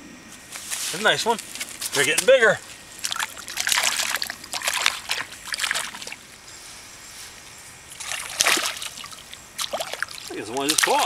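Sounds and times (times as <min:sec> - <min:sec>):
water splashing and trickling: 0:03.0 - 0:06.2, 0:08.0 - 0:11.0.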